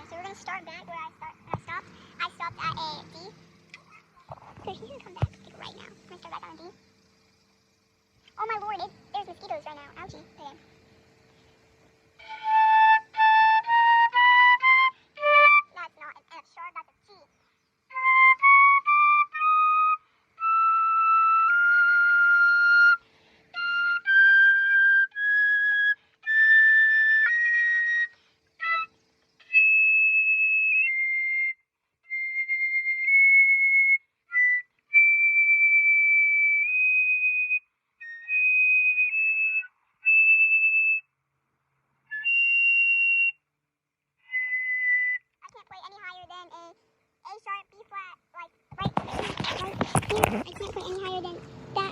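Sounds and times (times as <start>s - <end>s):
flute playing rising notes: 12.2s - 15.8s, 17.9s - 41.0s, 42.1s - 43.4s, 44.2s - 45.2s.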